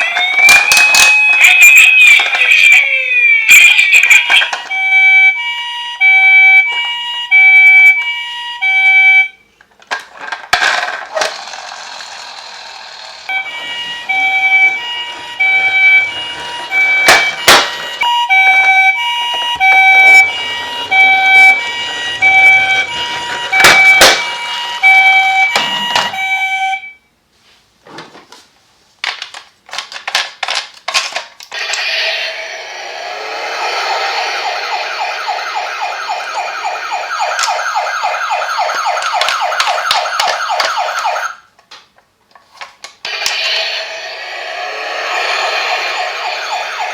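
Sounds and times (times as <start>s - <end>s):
toy siren two-tone: 0.0s - 9.4s, 13.3s - 27.0s, 31.6s - 41.4s, 43.1s - 46.9s.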